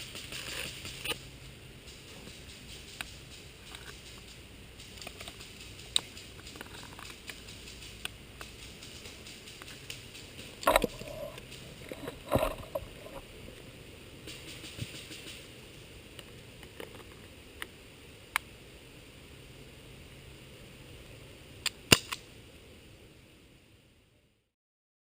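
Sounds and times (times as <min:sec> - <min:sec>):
handling noise and rustling: 0:01.9 - 0:13.6.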